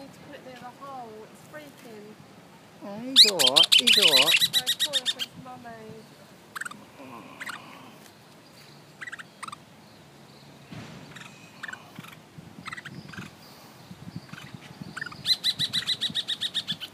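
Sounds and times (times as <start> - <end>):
woodpeckers calling: 3.1 - 5.4, 6.0 - 16.9.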